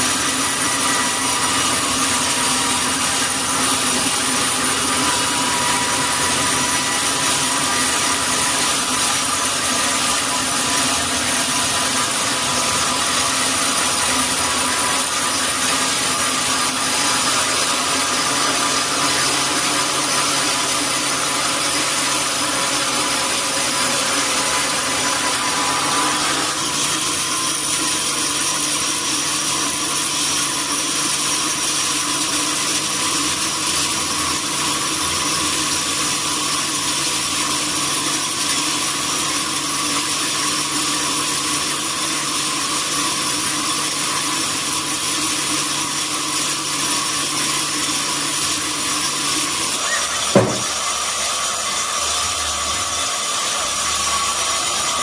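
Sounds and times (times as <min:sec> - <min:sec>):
saw cutting through log: 0:00.0 - 0:55.0.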